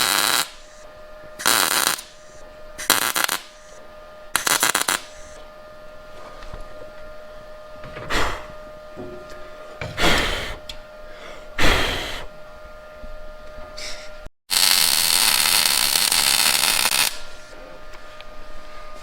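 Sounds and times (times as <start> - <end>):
tack-weld bursts: 0.0 - 0.7, 1.4 - 2.2, 2.8 - 3.6, 4.4 - 5.4, 9.8 - 10.8.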